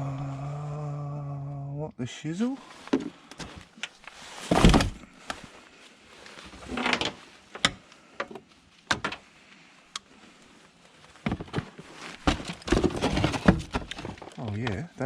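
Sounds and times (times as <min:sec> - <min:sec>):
junk scraping: 0:02.6 - 0:05.4, 0:11.1 - 0:14.8
knocks and clunks: 0:04.5 - 0:05.0, 0:11.2 - 0:14.8
junk clattering in a skip: 0:11.2 - 0:14.5.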